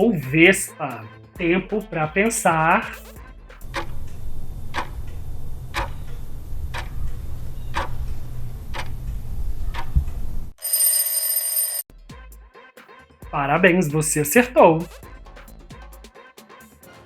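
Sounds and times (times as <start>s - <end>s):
clock ticking: 5.7s - 8.0s
bright ringing tone: 10.6s - 11.8s.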